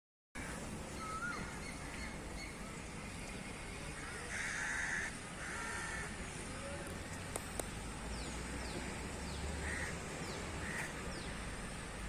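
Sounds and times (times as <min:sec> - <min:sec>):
birds chirping: 0:00.4 - 0:12.0
harsh rasping bird call: 0:04.0 - 0:06.2, 0:09.6 - 0:11.3.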